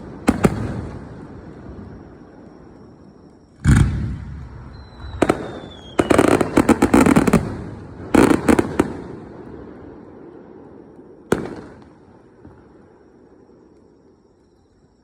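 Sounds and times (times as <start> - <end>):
firework crackling: 0.0 - 14.4
firework boom: 3.6 - 5.9
firework bang: 3.6 - 9.0.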